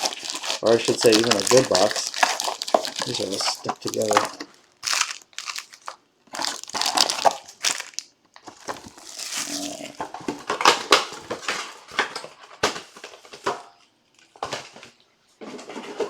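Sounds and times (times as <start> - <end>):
card pack wrappers crinkling: 0.0 - 13.6.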